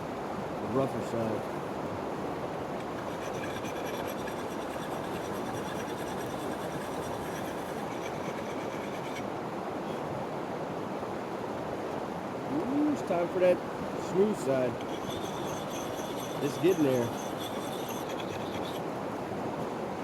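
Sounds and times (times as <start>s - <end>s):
creek rushing: 0.0s - 20.0s
hatchet scraping on sharpening stone: 2.8s - 9.2s, 14.8s - 18.8s.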